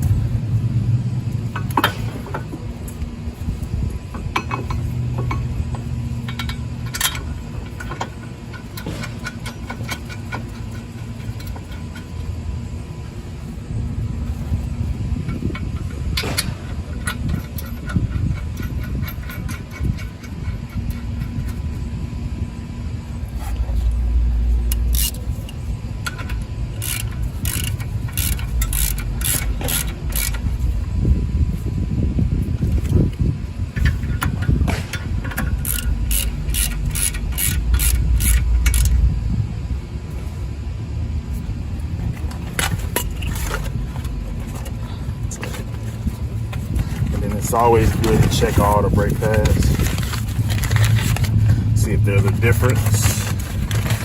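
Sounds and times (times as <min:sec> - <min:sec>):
low rumble: 0:00.0 - 0:54.0
socket ratchet clicking: 0:26.1 - 0:30.4, 0:35.3 - 0:39.0.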